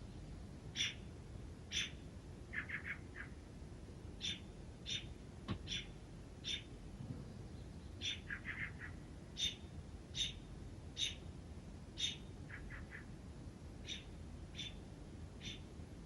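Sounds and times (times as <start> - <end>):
bird chirping: 0.8 - 1.0, 1.7 - 3.4, 4.2 - 6.7, 7.5 - 11.2, 12.0 - 13.1, 13.8 - 14.8, 15.4 - 15.7.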